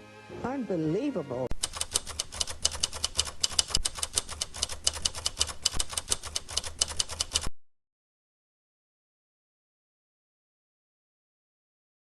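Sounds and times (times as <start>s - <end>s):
rapid even clicking: 1.5s - 7.5s.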